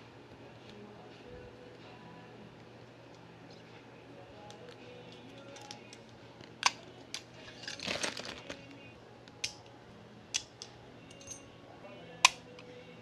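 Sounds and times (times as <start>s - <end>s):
packaging rustle: 7.5s - 8.8s.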